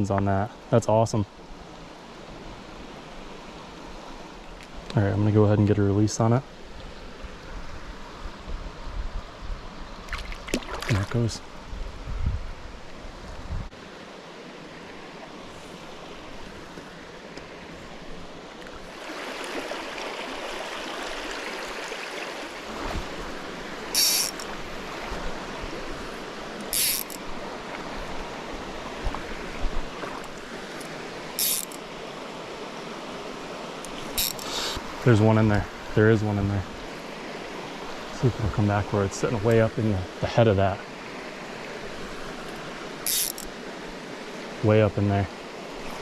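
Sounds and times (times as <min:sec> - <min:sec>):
stream running over riffles: 0:00.0 - 0:46.0
short sharp high-pitched noises: 0:24.0 - 0:24.4.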